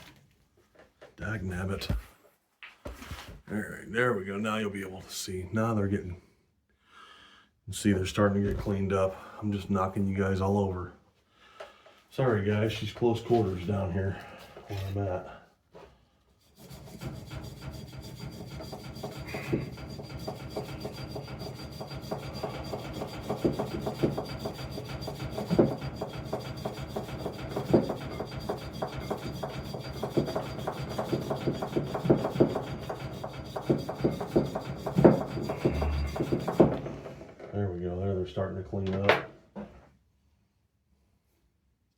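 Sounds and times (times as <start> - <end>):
hand scrubbing metal: 16.4 - 36.7
sharp knocks: 17.0 - 37.1.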